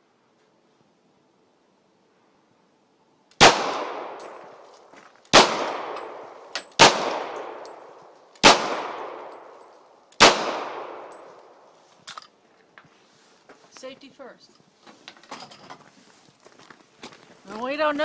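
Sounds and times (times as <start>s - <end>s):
echoing pistol shots: 3.4s - 4.6s, 5.3s - 9.6s, 10.2s - 11.6s.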